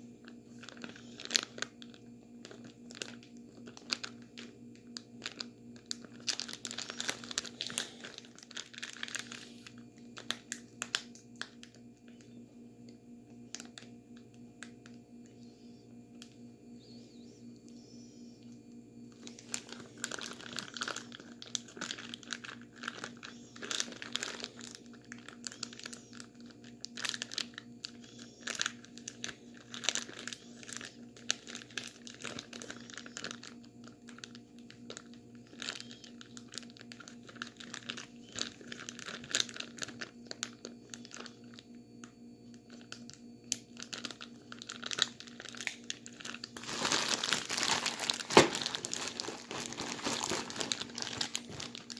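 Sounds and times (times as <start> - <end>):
low hum: 0.0 - 51.9
plastic bag crinkling: 0.2 - 12.3, 13.5 - 18.5, 19.1 - 51.9
ice crunching: 46.6 - 51.9.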